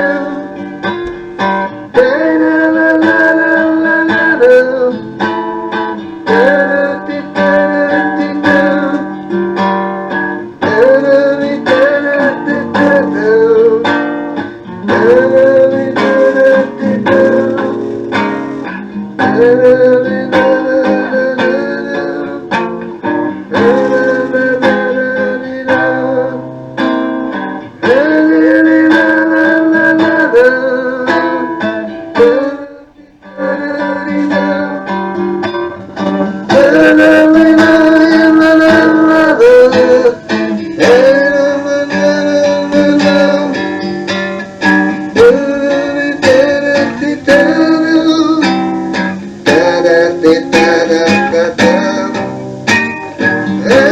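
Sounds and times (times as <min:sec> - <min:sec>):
pop music with guitar from cassette: 0:00.0 - 0:53.9.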